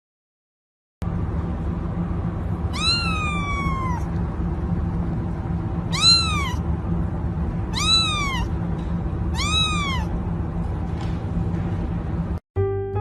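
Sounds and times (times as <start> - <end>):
steady low hum: 1.0 - 12.8
cat meowing: 2.7 - 4.1, 5.9 - 6.6, 7.7 - 8.6, 9.3 - 10.2.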